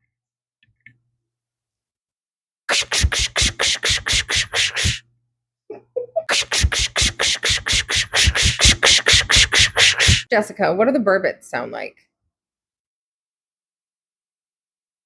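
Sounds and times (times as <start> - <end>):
person making rasping mouth sounds: 2.7 - 5.0, 5.8 - 10.3.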